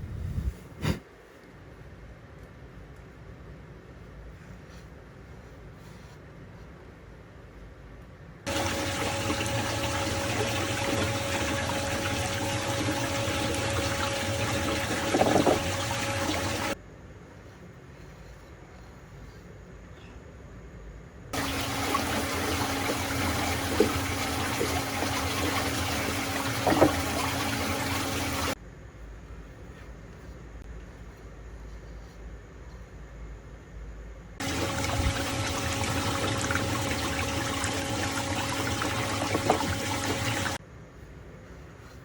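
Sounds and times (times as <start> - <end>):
faint steady hum: 0.0 - 42.0
water rushing down drain: 8.5 - 16.8, 21.4 - 28.6, 34.4 - 40.6.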